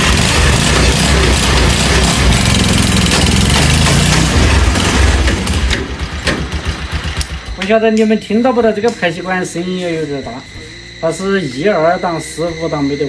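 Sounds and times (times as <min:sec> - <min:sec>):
motorcycle engine running loudly: 0:00.0 - 0:08.0.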